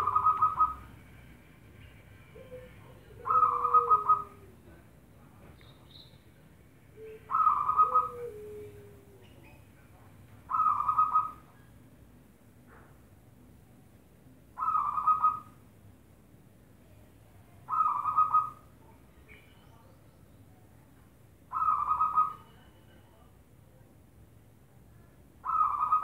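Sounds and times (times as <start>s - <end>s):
dove cooing: 0.0s - 0.9s, 2.4s - 4.6s, 7.0s - 9.3s, 10.5s - 11.4s, 14.6s - 15.6s, 17.7s - 18.6s, 21.5s - 22.4s, 25.4s - 26.0s.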